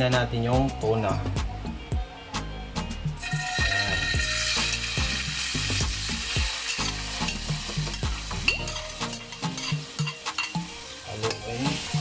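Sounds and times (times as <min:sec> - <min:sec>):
fish sizzling in hot oil: 0:03.2 - 0:12.0.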